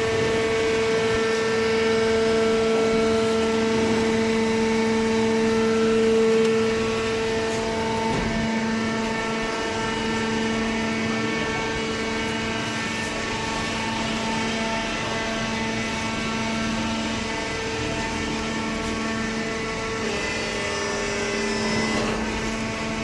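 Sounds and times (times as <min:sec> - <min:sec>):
hydraulic baler motor humming: 0:00.0 - 0:23.0.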